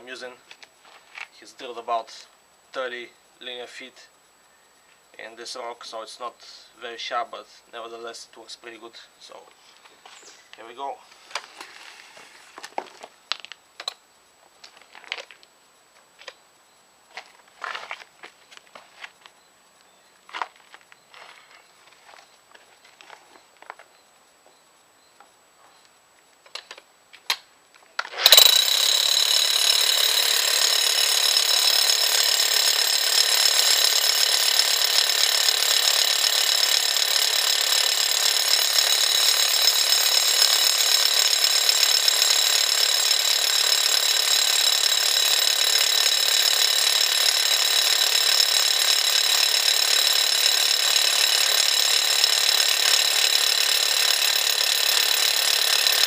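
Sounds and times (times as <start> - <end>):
rotary hammer drilling into rock: 28.1 - 56.0.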